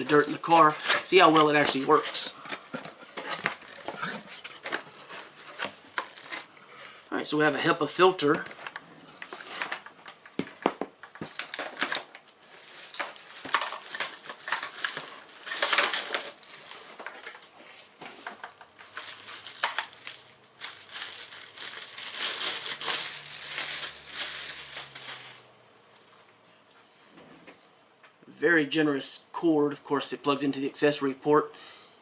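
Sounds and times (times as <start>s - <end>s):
plastic packaging crinkling: 0.0s - 25.5s.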